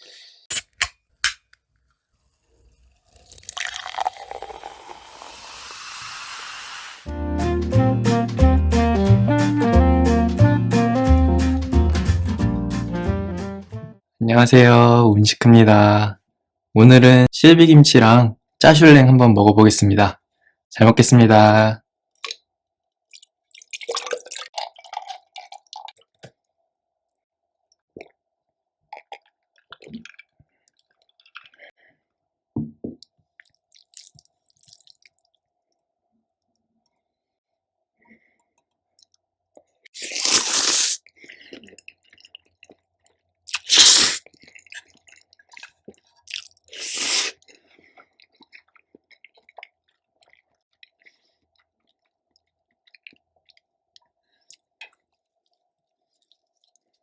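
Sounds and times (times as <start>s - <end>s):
chewing and crunching food: 22.1s - 26.5s, 28.9s - 31.8s, 33.3s - 35.8s, 38.4s - 57.0s.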